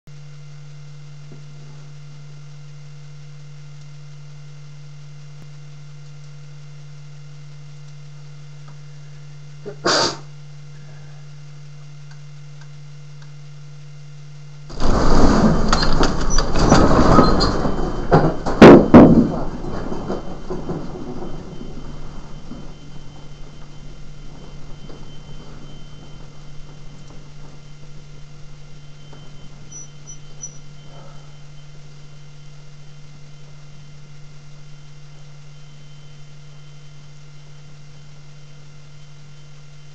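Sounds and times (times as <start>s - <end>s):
low electrical hum: 0.1s - 39.9s
faint hiss: 8.9s - 11.4s
loud knocks: 14.7s - 30.9s
building and contents rattling: 14.7s - 32.0s
earthquake deep rumble: 14.7s - 35.0s.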